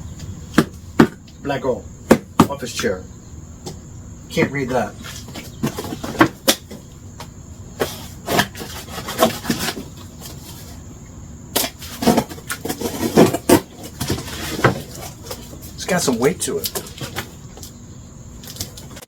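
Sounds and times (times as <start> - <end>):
cardboard box knocks and scrapes: 7.8 - 10.7, 11.6 - 15.6.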